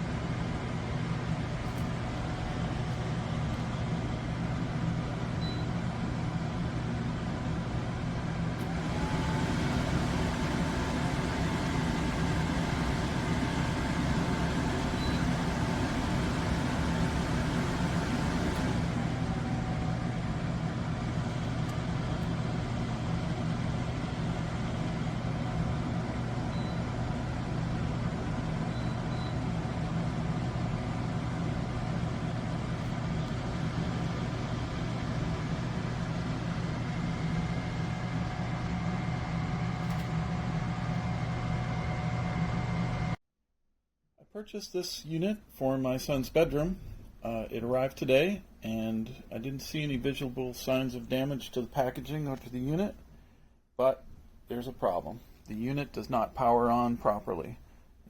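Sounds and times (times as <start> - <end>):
low machine hum: 0.0 - 43.2.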